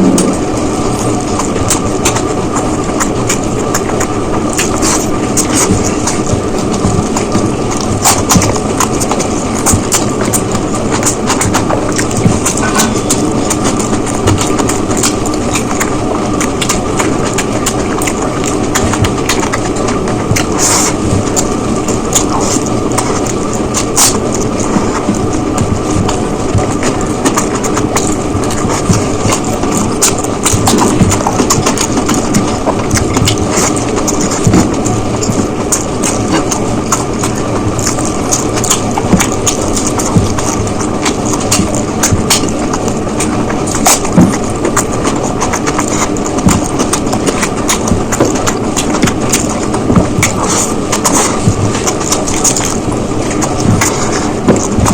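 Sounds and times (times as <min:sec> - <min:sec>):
sharp mouth clicks: 0:00.0 - 0:03.4
chewing with mouth clicks: 0:00.0 - 0:54.9
steady background noise: 0:00.0 - 0:54.9
steady rushing background: 0:00.0 - 0:54.9.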